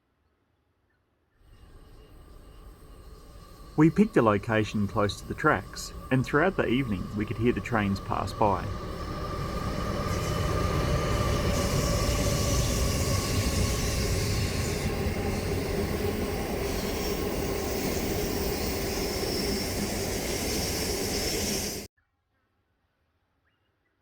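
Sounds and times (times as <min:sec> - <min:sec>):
train wheels rushing on rails: 0:01.5 - 0:21.9
held ringing tones: 0:02.3 - 0:12.2.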